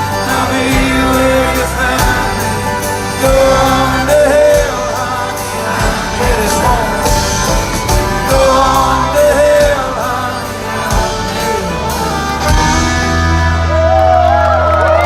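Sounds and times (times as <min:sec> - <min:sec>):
gliding fiddle: 0:00.0 - 0:14.3
country-rock band playing: 0:00.0 - 0:15.0
drum hits: 0:05.8 - 0:10.1.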